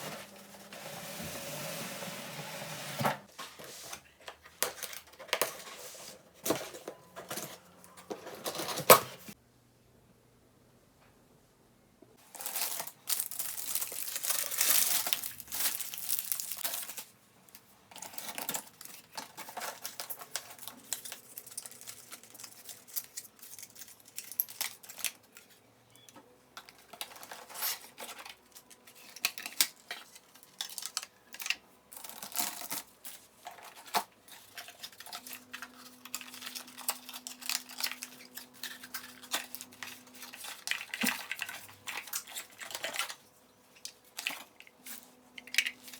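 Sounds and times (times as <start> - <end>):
plastic and cardboard crinkling: 12.2 - 26.0, 26.6 - 45.9.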